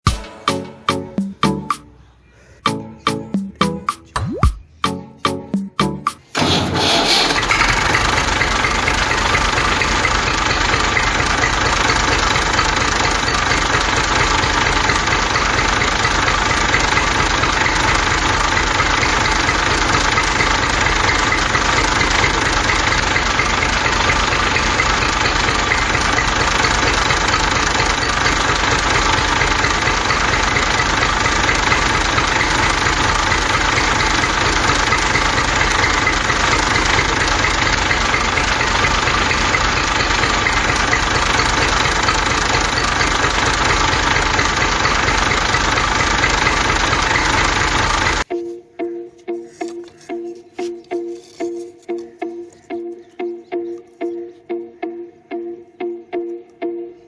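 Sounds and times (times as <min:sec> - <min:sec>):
engine running steadily: 0:06.3 - 0:48.3.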